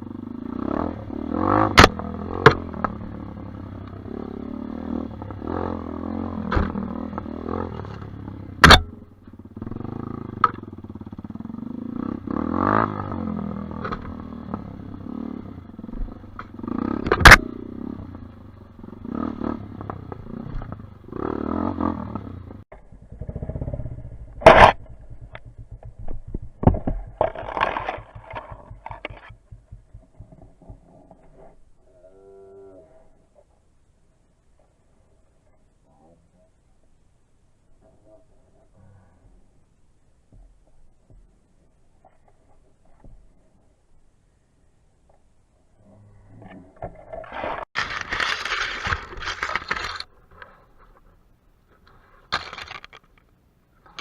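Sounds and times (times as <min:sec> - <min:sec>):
dirt bike engine revving: 0:00.0 - 0:25.9
bike knocking and scraping: 0:00.0 - 0:31.8, 0:46.4 - 0:54.0.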